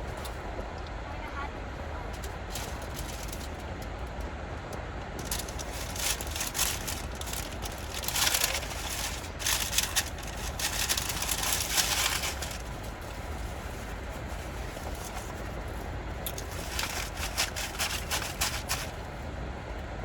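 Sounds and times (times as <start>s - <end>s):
low steady hum: 0.0s - 20.0s
paper and plastic rustling: 2.1s - 3.7s, 5.2s - 19.2s.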